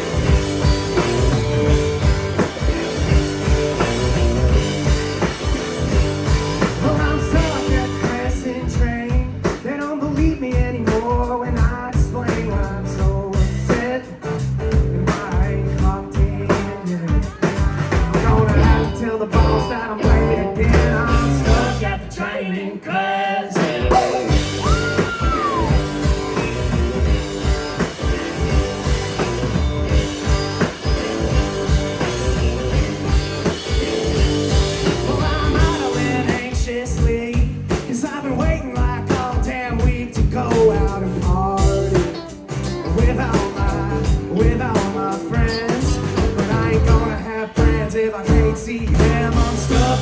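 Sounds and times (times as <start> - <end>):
rock and roll band playing: 0.0 - 50.0
lead singer singing: 6.6 - 26.6, 34.7 - 50.0.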